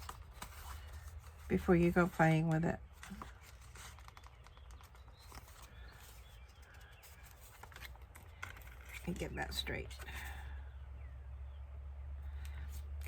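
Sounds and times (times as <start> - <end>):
paper card rustling: 0.0 - 10.4
low steady hum: 0.0 - 13.0.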